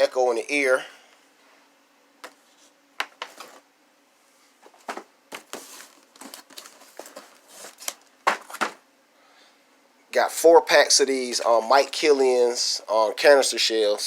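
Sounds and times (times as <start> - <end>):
packaging crinkling and rustling: 4.7 - 8.8.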